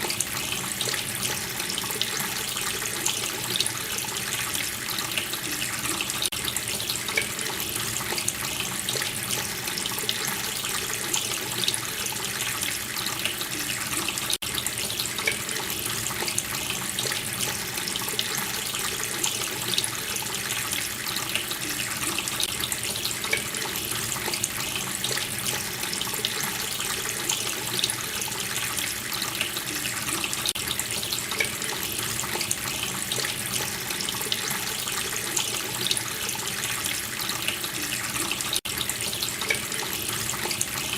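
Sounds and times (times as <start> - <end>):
water running from a tap: 0.0 - 40.9
water splashing into a sink: 0.0 - 40.9.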